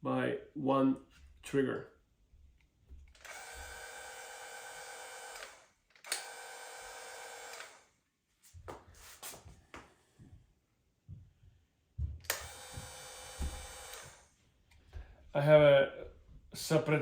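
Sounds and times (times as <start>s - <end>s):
small electric motors whirring: 3.2s - 7.9s, 12.3s - 14.3s.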